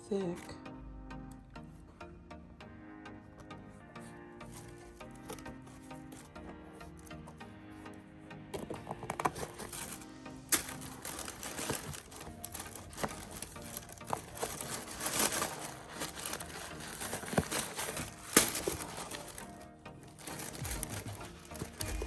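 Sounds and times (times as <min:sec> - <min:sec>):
packaging crinkling: 0:08.6 - 0:22.0.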